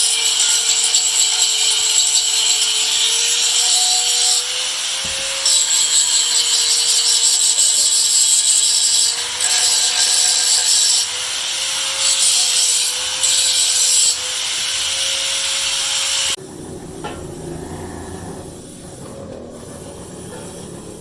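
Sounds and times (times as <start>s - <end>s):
sanding metal scraping: 0.0s - 21.0s.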